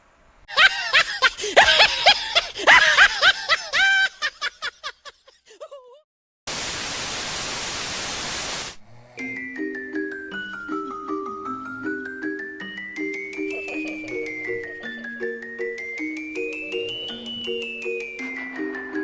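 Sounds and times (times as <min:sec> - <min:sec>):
high-pitched giggling: 0:00.5 - 0:06.0, 0:13.3 - 0:19.0
hissing static: 0:06.5 - 0:08.8.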